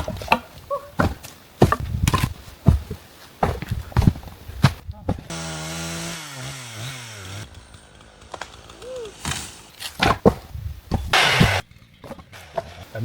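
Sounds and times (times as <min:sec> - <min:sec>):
chainsaw engine running: 0:05.3 - 0:09.7.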